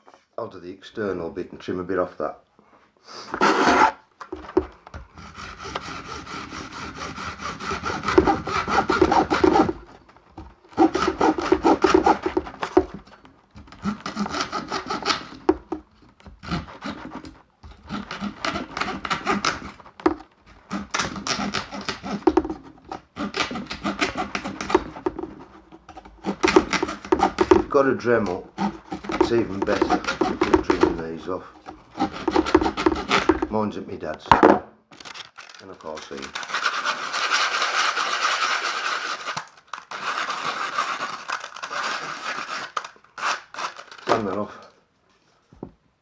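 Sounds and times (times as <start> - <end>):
fine saw rasping: 3.3 - 4.0, 5.1 - 10.1, 10.7 - 33.6.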